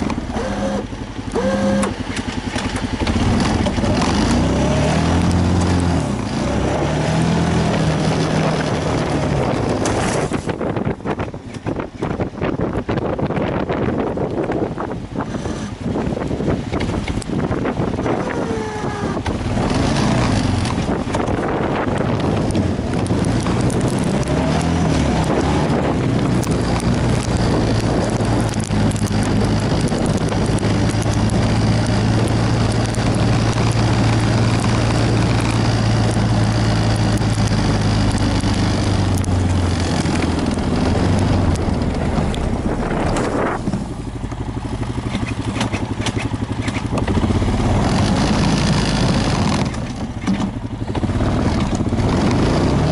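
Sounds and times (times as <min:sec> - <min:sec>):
engine running steadily: 0:00.0 - 0:52.9
wind rushing: 0:04.0 - 0:45.0.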